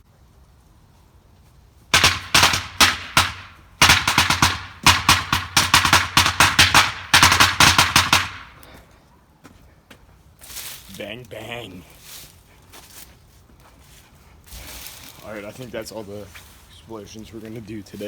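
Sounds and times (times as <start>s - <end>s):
small firecrackers popping: 1.9s - 8.8s.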